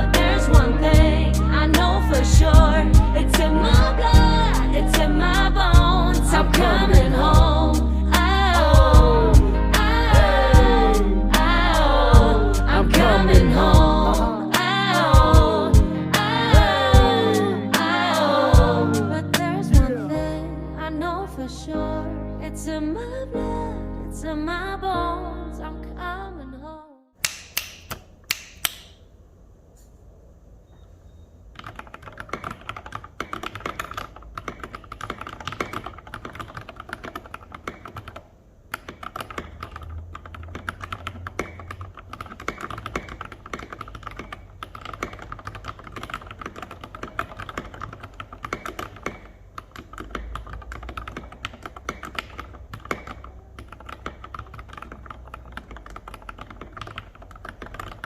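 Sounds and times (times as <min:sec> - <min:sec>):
mechanical keyboard typing: 0:31.6 - 0:58.0.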